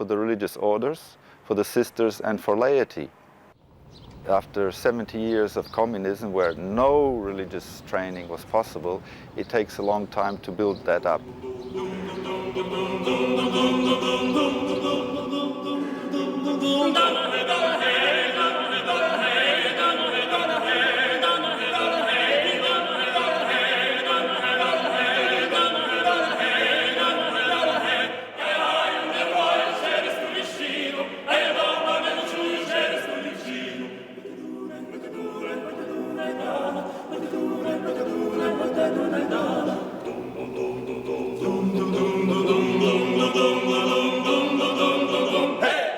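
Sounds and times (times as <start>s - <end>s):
choir singing held chords: 11.0s - 45.9s.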